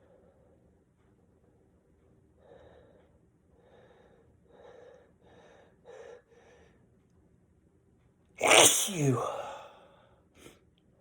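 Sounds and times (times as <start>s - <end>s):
faint gasping breaths: 8.4s - 10.0s.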